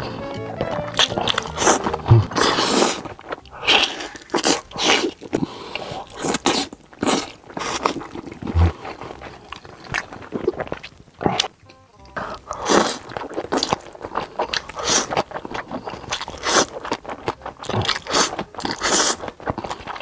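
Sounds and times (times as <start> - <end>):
person chewing crunchy food: 0.6 - 20.0.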